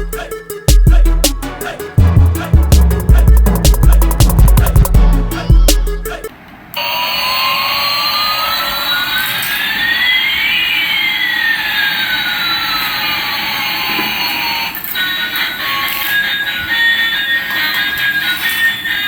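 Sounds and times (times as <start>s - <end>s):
music: 0.0s - 6.3s, 9.6s - 19.0s
rising whistle: 6.8s - 14.6s
falling whistle: 6.8s - 14.8s.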